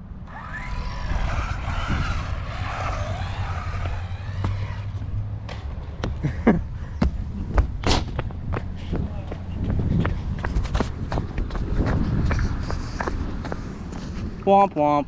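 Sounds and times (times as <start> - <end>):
low rumble: 0.0 - 14.4
small electric motor whining: 0.2 - 5.2.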